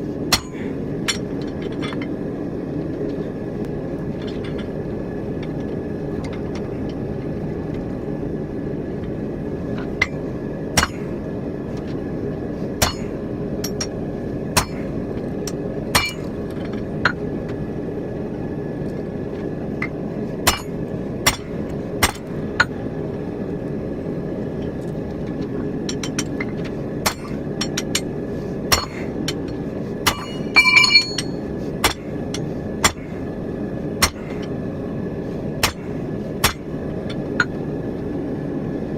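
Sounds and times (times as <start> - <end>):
hammer striking steel on an anvil: 0.3 - 1.3, 10.8 - 11.0, 12.8 - 13.9, 14.6 - 14.8, 16.0 - 16.3, 20.5 - 22.3, 27.0 - 28.1, 28.7 - 29.1, 30.0 - 32.0, 32.8 - 33.1, 34.0 - 34.3, 35.6 - 35.8.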